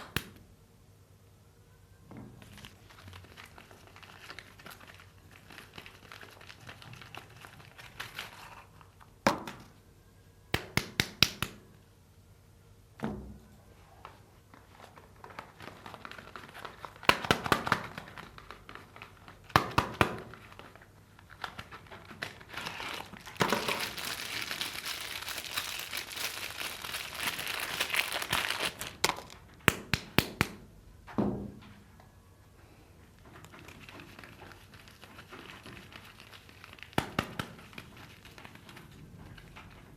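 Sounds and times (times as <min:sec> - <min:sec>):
wrappers crinkling and tearing: 0:02.4 - 0:09.0, 0:14.5 - 0:29.6, 0:33.2 - 0:39.9.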